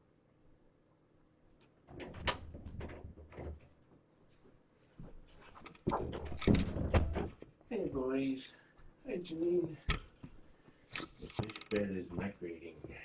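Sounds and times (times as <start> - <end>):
door knocks and clicks: 1.9 - 3.6, 5.9 - 7.4.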